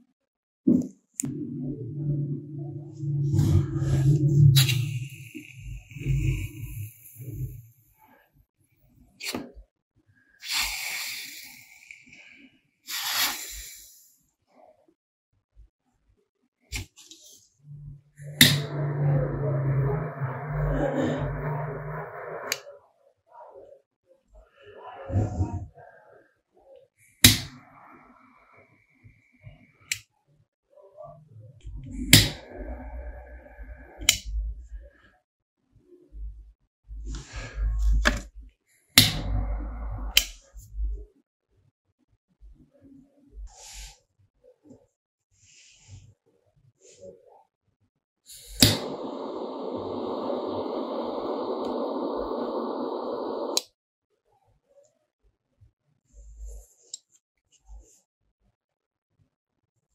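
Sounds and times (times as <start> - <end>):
low rumbling: 1.2 - 7.7, 17.6 - 22.6, 48.6 - 53.6
hissing bursts: 48.5 - 53.6.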